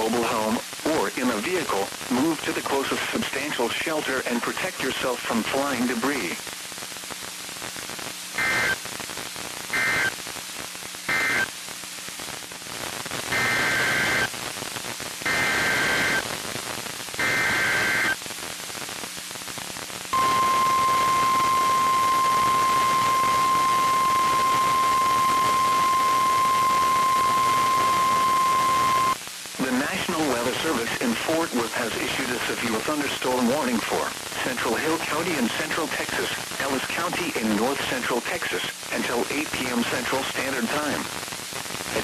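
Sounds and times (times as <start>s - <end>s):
radio static hiss: 0.0s - 42.0s
data bursts: 8.4s - 8.8s, 9.8s - 10.1s, 11.1s - 11.5s, 15.3s - 16.2s, 17.2s - 18.2s, 20.2s - 29.2s
weather radio alarm tone: 9.8s - 10.1s, 11.1s - 11.5s, 15.3s - 16.2s, 17.2s - 18.2s, 20.2s - 29.2s.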